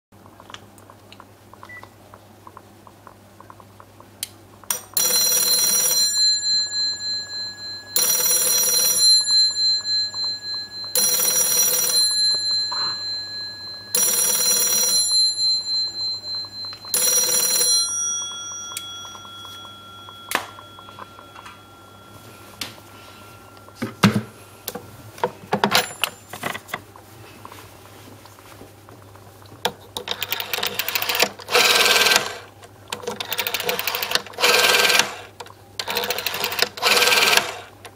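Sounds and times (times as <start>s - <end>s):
telephone bell ringing: 5.0s - 24.4s, 25.7s - 26.6s, 30.2s - 32.4s, 33.3s - 35.3s, 35.9s - 37.6s.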